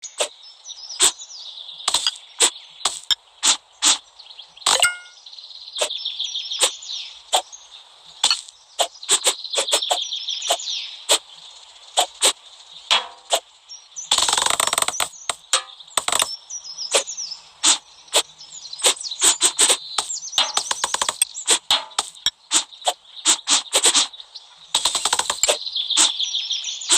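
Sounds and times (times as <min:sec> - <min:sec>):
knife scraping slices: 0:08.2 - 0:11.2, 0:16.9 - 0:17.8, 0:18.8 - 0:24.1, 0:24.8 - 0:26.2.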